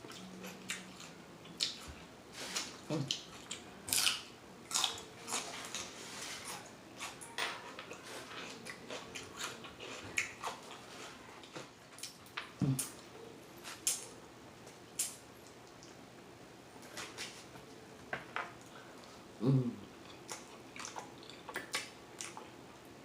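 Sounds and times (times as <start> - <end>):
low voice-like sound: 19.4 - 19.9
mouth chewing with wet smacking: 20.0 - 22.5.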